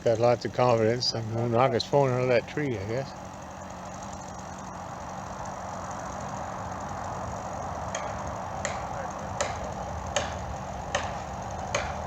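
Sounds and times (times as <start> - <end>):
engine running: 0.0 - 12.0
sharp knocks: 7.9 - 12.0.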